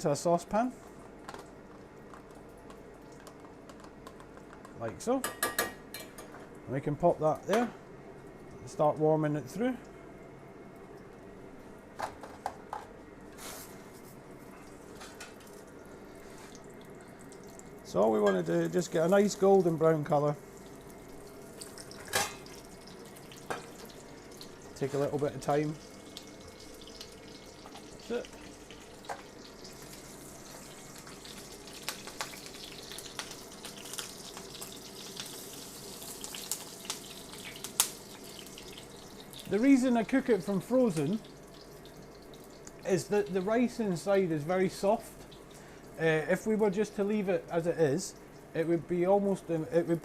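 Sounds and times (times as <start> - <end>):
faint kitchen background: 0.0 - 50.0
rice cake sizzling in hot oil: 18.4 - 44.1.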